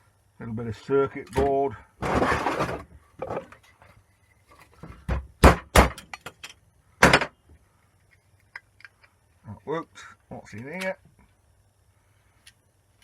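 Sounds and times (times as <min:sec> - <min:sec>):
rustling and scraping: 0:02.0 - 0:05.1.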